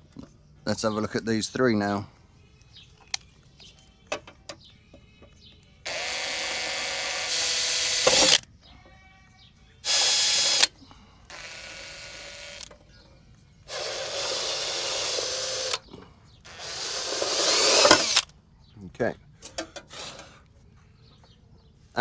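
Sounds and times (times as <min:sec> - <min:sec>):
cordless drill whining: 0:05.9 - 0:08.4, 0:09.8 - 0:10.7, 0:11.3 - 0:12.7, 0:13.7 - 0:15.9, 0:16.5 - 0:18.3.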